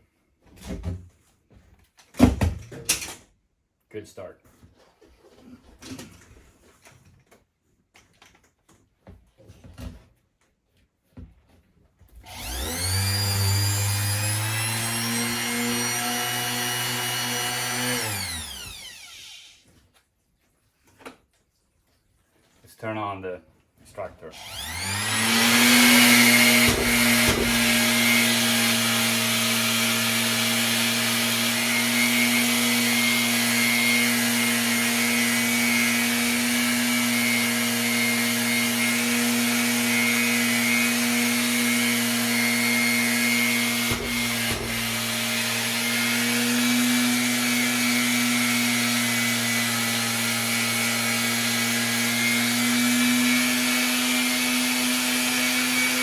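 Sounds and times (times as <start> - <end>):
dust extractor running: 12.3 - 19.5, 24.4 - 56.0
orbital sander sanding metal: 12.4 - 18.6, 24.4 - 56.0.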